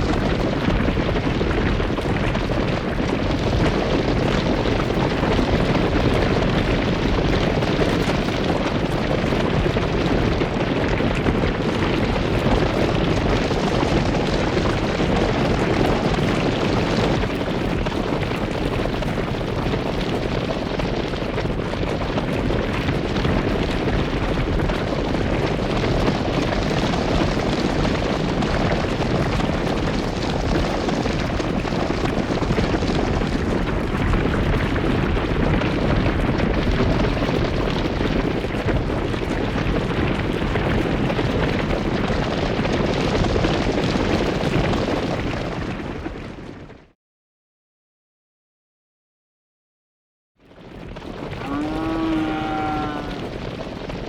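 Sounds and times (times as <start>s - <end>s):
loud rumbling noise: 51.3s - 54.0s.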